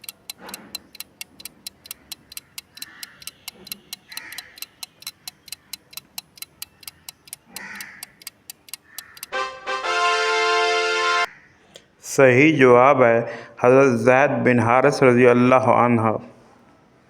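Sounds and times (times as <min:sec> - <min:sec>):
clock ticking: 0:00.0 - 0:09.5.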